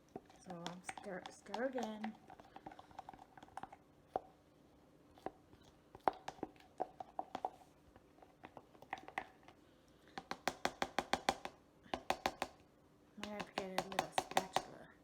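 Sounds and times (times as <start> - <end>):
spoon stirring thick batter: 0.0 - 14.8.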